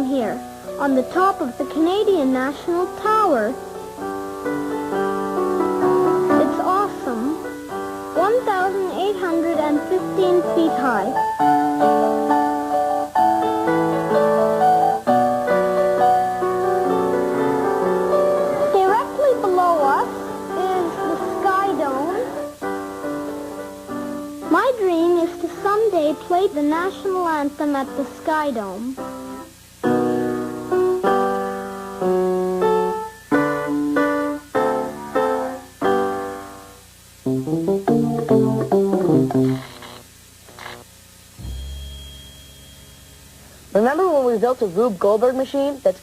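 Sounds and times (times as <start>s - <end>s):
piano chords and melody: 3.6s - 25.3s, 29.0s - 39.7s, 41.4s - 43.6s.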